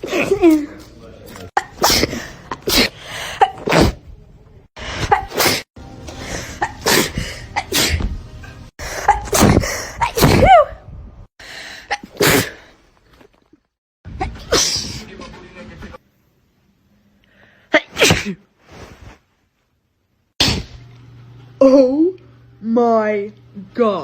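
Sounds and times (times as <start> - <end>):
people sneezing: 1.6 - 4.1, 4.8 - 8.1, 8.8 - 10.7, 11.9 - 12.8, 14.2 - 15.2, 17.7 - 18.5, 20.4 - 20.8.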